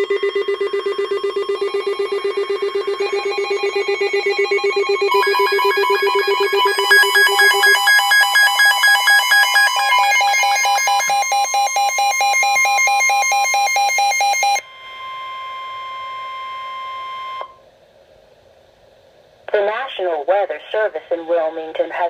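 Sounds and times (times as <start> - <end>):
pulsing multi-tone alarm beeping: 0.0 - 17.5
steady alarm tone: 0.0 - 17.6.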